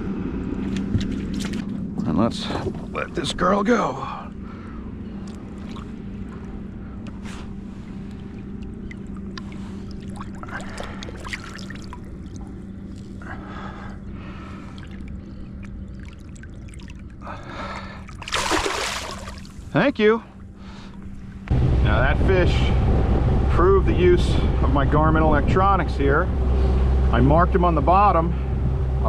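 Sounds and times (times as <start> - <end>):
water splashing and trickling: 0.6 - 1.8, 5.1 - 21.0.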